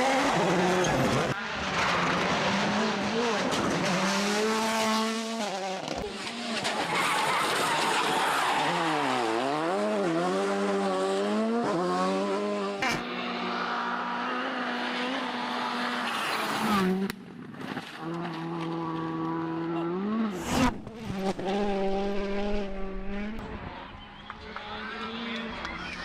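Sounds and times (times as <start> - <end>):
rally car engine revving: 0.0 - 17.2, 17.8 - 26.0
tyres skidding: 5.6 - 11.0.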